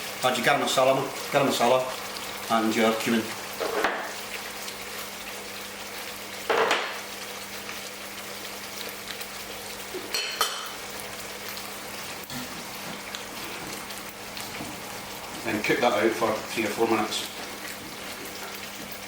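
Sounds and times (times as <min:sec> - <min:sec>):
sauce sizzling in a pan: 0:00.0 - 0:19.0
metal clink against pan: 0:10.1 - 0:10.7.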